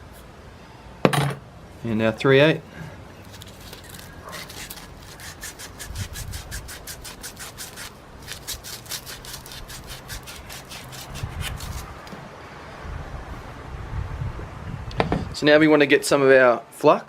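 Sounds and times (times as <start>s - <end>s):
emery tape rasping on copper pipe: 3.3s - 11.9s.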